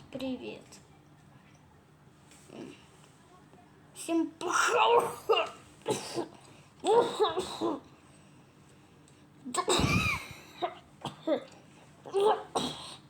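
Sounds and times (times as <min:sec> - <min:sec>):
person coughing: 0:09.6 - 0:11.4.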